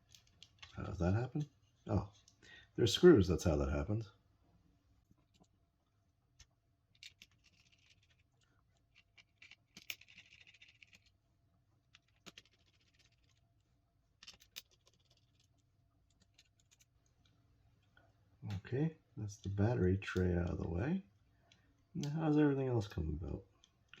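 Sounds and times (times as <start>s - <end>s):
plastic parts clicking: 0.0s - 0.8s, 6.4s - 11.2s, 11.9s - 13.4s, 14.2s - 17.4s.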